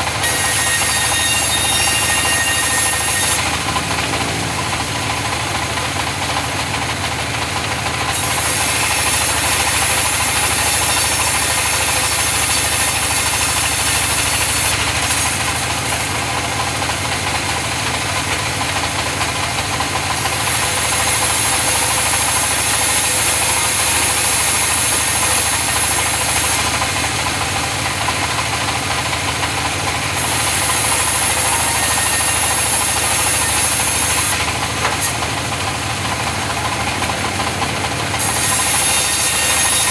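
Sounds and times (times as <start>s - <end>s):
sawmill saw running: 0.0s - 39.9s
saw hissing through wood: 8.1s - 16.6s, 18.2s - 39.9s.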